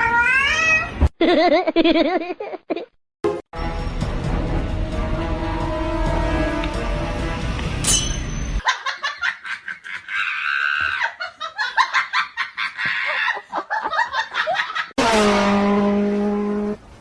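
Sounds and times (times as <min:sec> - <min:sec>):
person laughing: 0:01.2 - 0:02.9, 0:08.7 - 0:14.9
music: 0:03.3 - 0:08.6.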